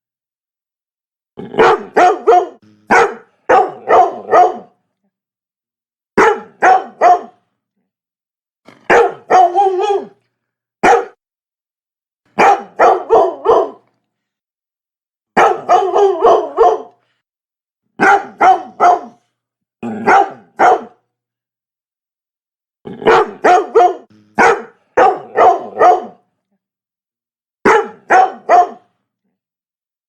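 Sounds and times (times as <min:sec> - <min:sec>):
dog barking: 0:01.6 - 0:04.8, 0:06.2 - 0:07.4, 0:08.8 - 0:10.2, 0:10.8 - 0:11.2, 0:12.4 - 0:13.9, 0:15.4 - 0:17.0, 0:18.0 - 0:19.3, 0:19.9 - 0:21.0, 0:23.0 - 0:26.3, 0:27.7 - 0:28.9.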